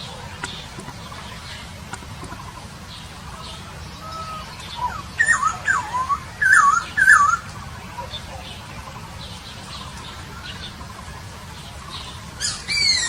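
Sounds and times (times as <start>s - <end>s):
songbird whistling: 0.0s - 7.5s, 11.6s - 13.0s.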